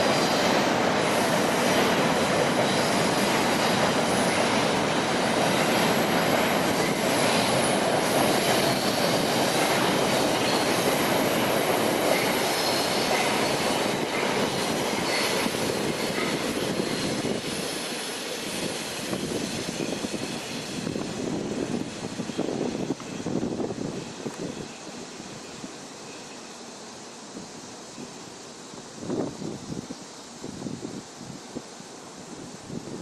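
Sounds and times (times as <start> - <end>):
train clatter: 0.0 - 24.7
train wheels squealing on rails: 0.0 - 33.0.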